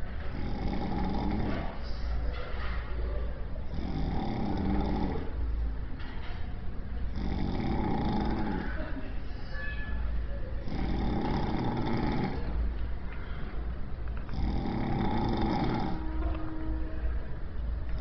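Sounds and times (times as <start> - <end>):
steady low hum: 0.0 - 18.0
rasping snores: 0.3 - 1.8, 3.6 - 5.4, 7.1 - 8.8, 10.6 - 12.6, 14.2 - 16.8.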